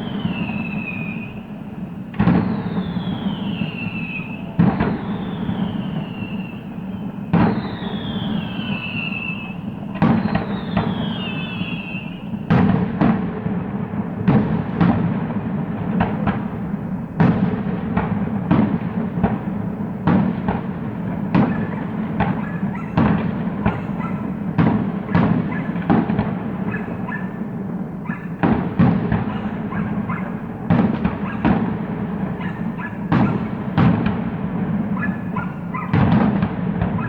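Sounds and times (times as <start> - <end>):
firework rumble and crackle: 0.0 - 37.0
firework shells bursting: 16.0 - 37.0.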